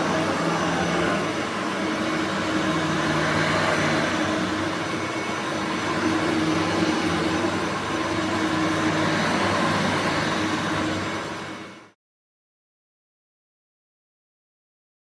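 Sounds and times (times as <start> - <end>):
upright vacuum cleaner running: 0.0 - 12.0.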